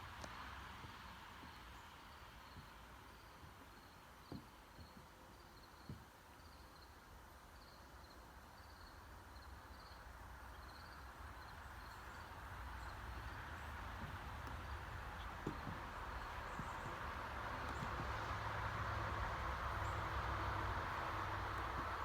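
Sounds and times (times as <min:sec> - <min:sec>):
soft knocks: 0:13.9 - 0:18.6.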